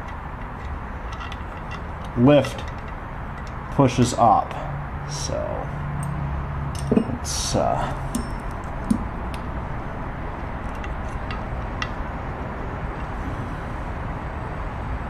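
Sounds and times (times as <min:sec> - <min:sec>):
light clicks of metal parts: 0:00.0 - 0:04.6, 0:05.3 - 0:12.2.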